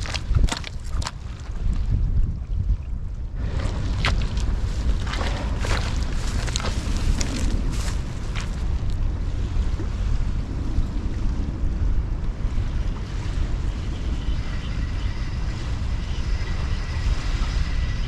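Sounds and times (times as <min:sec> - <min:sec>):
wind buffeting microphone: 0:00.0 - 0:18.0
faint high whine: 0:13.2 - 0:18.0.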